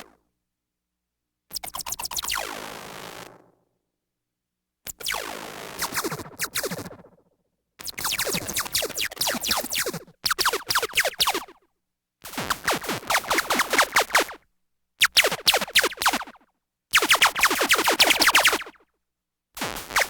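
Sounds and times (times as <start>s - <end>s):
synthesized laser blasts: 12.5s - 14.4s, 15.0s - 16.4s, 17.0s - 18.8s.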